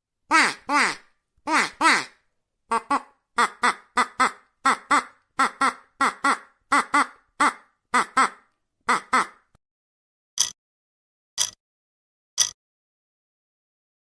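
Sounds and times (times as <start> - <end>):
duck quacking: 0.3 - 9.5.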